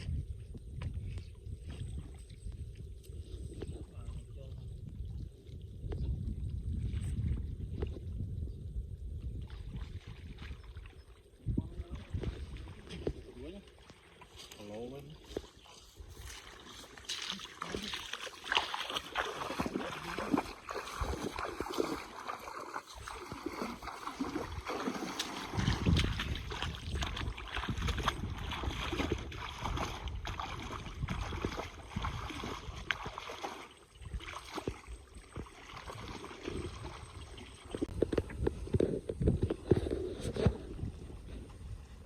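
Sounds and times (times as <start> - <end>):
water splashing and sloshing: 9.2 - 42.0
low water surge: 15.0 - 37.9.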